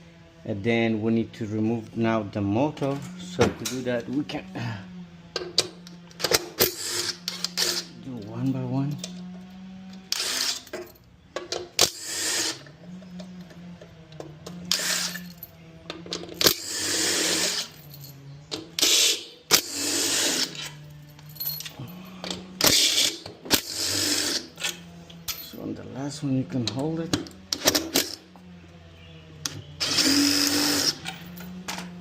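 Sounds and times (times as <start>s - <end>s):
metallic rattling and clinking: 20.3s - 22.4s, 24.5s - 25.7s.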